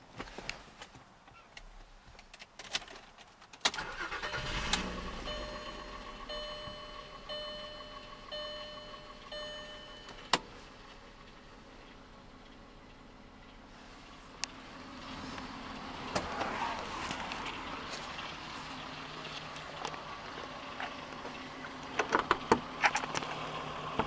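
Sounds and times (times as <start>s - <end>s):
engine cranking and idling: 3.6s - 24.0s
electronic warning chime: 4.1s - 10.3s.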